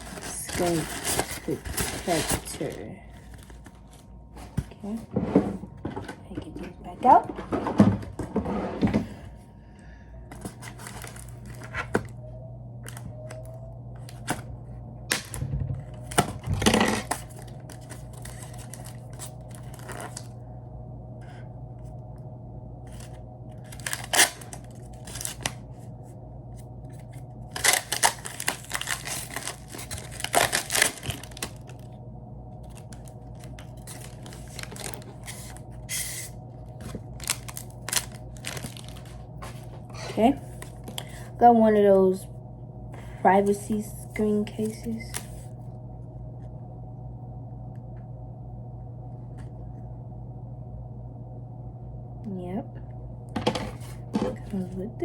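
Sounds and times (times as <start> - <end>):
plastic packaging tearing: 0.0 - 2.8, 10.5 - 12.0, 15.1 - 20.3, 23.0 - 25.6, 27.0 - 31.9, 32.6 - 39.2
steady low hum: 0.0 - 55.0.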